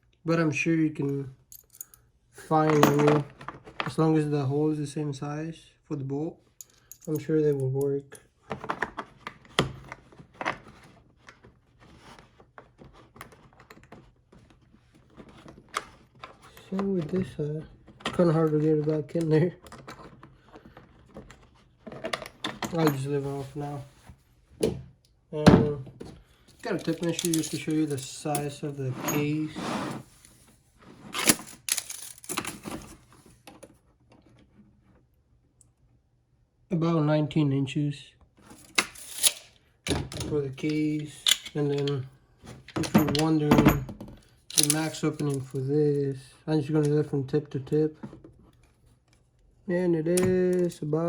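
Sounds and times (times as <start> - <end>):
tape measure blade rasping out: 38.8 - 39.6.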